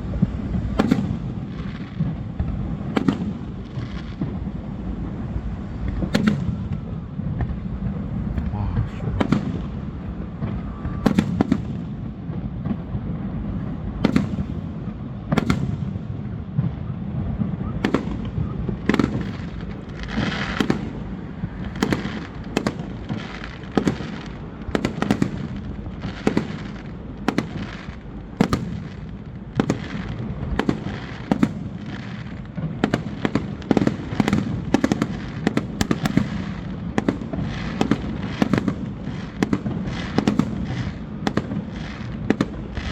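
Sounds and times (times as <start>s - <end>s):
low rumble of echoing booms: 0.0s - 16.0s
crackling firework trails: 0.0s - 42.9s
fireworks bursting with sharp bangs: 0.0s - 42.9s.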